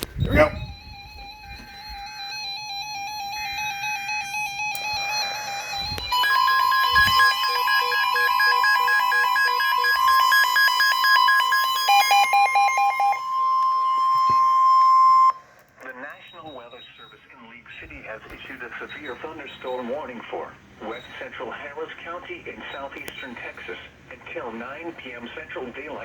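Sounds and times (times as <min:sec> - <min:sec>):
buzzy data bursts: 0:00.0 - 0:15.3
warbling alarm tone: 0:00.0 - 0:15.5
rapid alarm beeping: 0:00.0 - 0:17.8
loud steady warning tone: 0:00.0 - 0:17.9.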